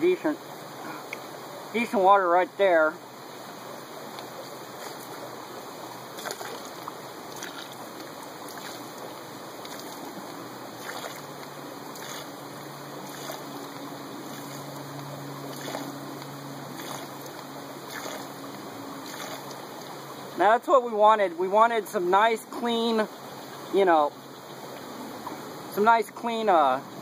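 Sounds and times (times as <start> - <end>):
stream water running: 0.0 - 27.0.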